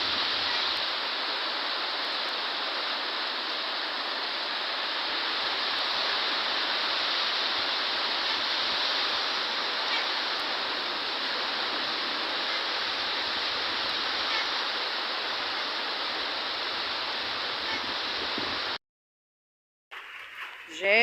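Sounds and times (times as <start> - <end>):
heavy rain pouring: 0.0 - 18.8.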